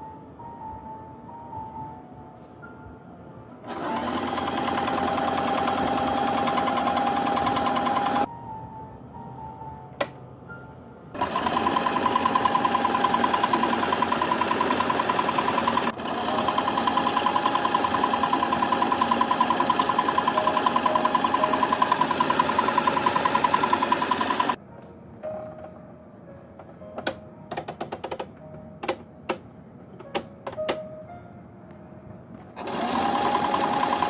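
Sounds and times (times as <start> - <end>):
sewing machine running: 3.7 - 8.3, 11.2 - 24.6, 32.6 - 34.0.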